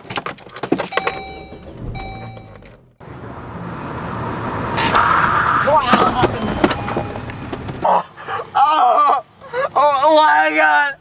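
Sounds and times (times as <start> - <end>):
car rumble: 0.0 - 10.7
ringing tones: 0.9 - 2.8, 6.3 - 7.6
rush of car noise: 0.9 - 9.9.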